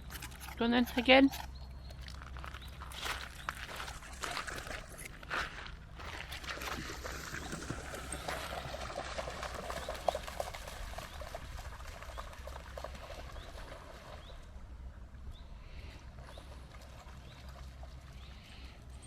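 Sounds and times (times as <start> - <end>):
water trickling and lapping: 0.0 - 19.0
dog splashing through water: 6.1 - 14.4.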